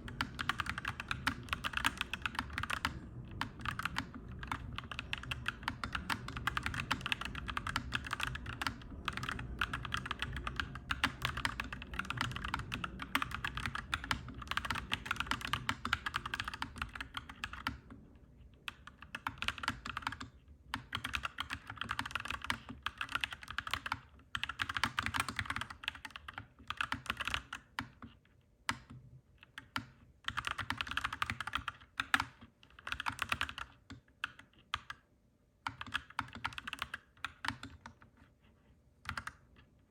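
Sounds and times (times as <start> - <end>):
low rumble: 0.0 - 15.7
mechanical keyboard typing: 0.0 - 18.0, 18.6 - 38.2, 39.0 - 39.7.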